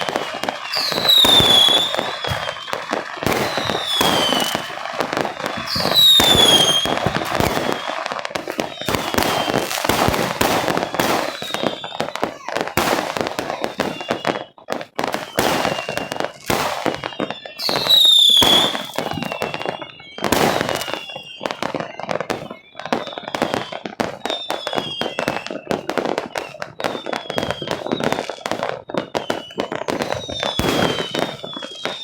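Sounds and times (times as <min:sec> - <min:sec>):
fireworks bangs and crackle: 0:00.0 - 0:32.0
fireworks whistles: 0:00.0 - 0:32.0.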